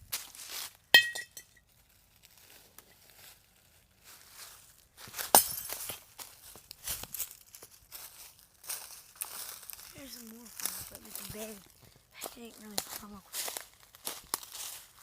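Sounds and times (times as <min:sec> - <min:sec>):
light crunching and rustling: 0:00.0 - 0:15.0
hard object struck with clink: 0:01.0 - 0:01.5.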